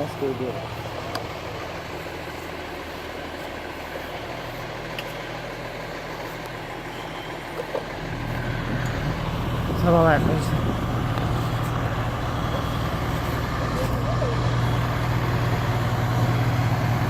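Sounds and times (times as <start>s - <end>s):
fire engine idling: 0.0s - 17.0s.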